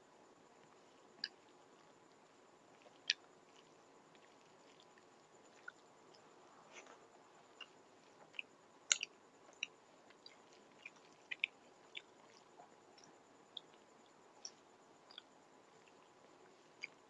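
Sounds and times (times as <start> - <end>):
person chewing food: 0.6 - 17.0
wet mouth clicks and smacks: 7.6 - 13.8, 14.4 - 15.3.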